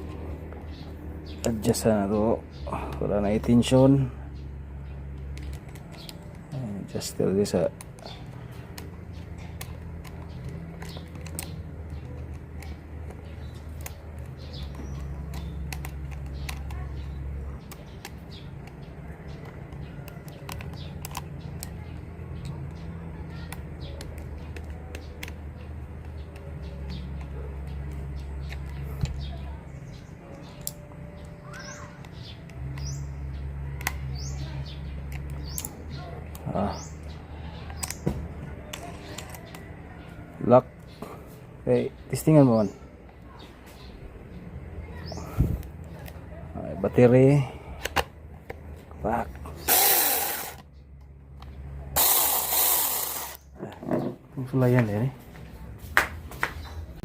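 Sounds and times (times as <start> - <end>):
bird chirping: 0.0 - 47.8
chainsaw parts clicking: 5.1 - 21.8, 49.3 - 50.7, 51.4 - 53.8.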